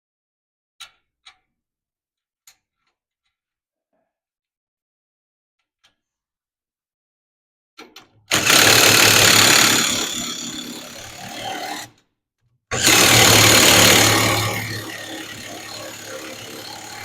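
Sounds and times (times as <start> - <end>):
power wrench running: 8.3 - 11.9, 12.7 - 17.0.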